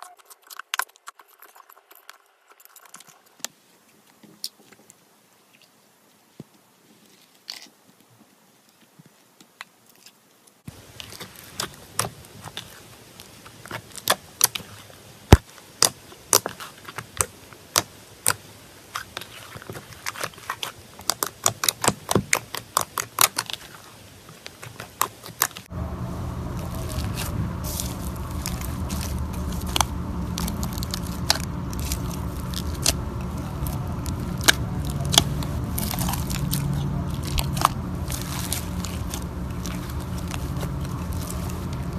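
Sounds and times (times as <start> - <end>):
steady low hum: 25.6 - 41.9.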